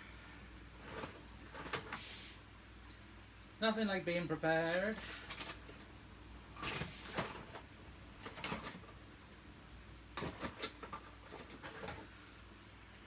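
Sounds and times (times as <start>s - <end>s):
handling clicks and knocks: 10.2s - 12.1s.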